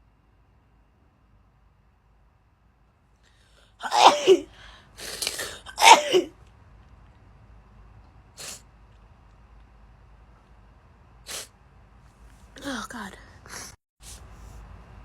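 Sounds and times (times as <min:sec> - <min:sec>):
breathy intake: 0:03.3 - 0:05.8
girl sneezing: 0:03.8 - 0:06.3
short breathy hiss: 0:04.6 - 0:05.6, 0:08.4 - 0:08.6, 0:11.3 - 0:11.5.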